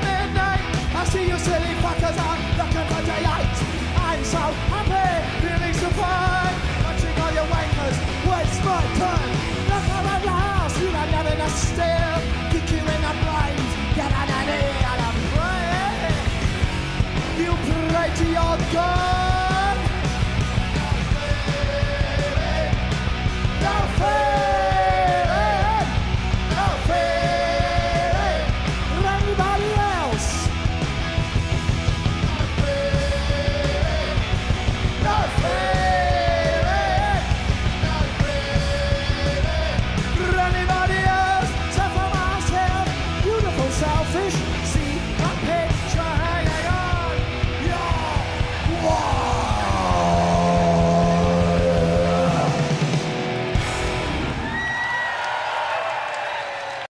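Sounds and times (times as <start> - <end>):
punk rock band playing: 0.0 - 55.0
person yelling: 47.6 - 52.6.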